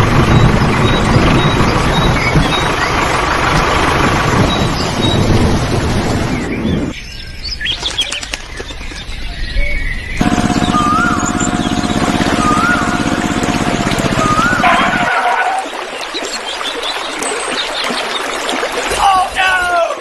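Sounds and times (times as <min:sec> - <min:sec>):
steady rushing noise: 0:00.0 - 0:07.0
small birds chirping: 0:00.2 - 0:05.4, 0:06.3 - 0:14.8
steady hum: 0:10.2 - 0:15.1.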